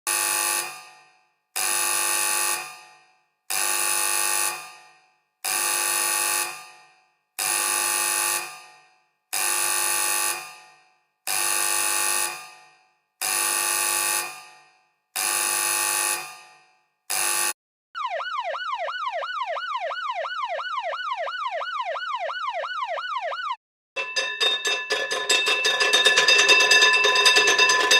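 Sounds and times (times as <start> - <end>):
emergency alert alarm tone: 17.1 - 23.6.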